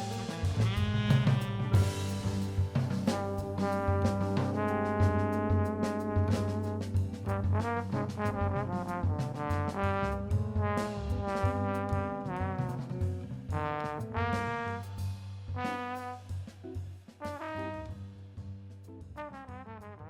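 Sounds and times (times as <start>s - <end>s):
tenor saxophone melody: 0.0s - 6.0s
backing track bass and drums: 0.0s - 20.0s.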